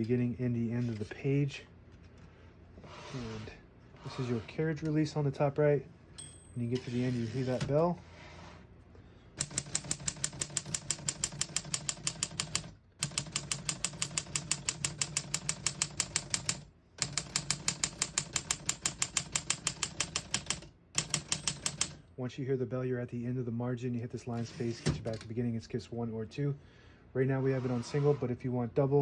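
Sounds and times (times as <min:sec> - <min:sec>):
manual typewriter typing: 0:09.4 - 0:22.0.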